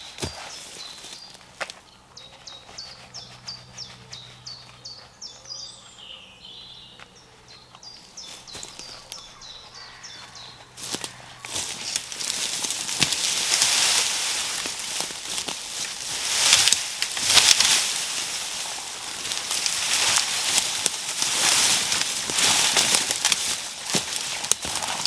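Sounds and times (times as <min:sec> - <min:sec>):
branch dragged through undergrowth: 0:00.0 - 0:02.9, 0:07.8 - 0:25.0
twigs snapping: 0:08.2 - 0:09.5, 0:10.2 - 0:25.0.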